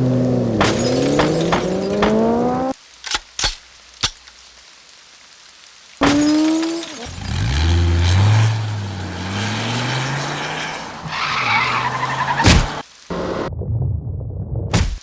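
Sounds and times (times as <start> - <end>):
car engine revving: 0.0 - 2.8, 7.0 - 13.5
tyres skidding: 0.0 - 2.8, 6.0 - 13.5.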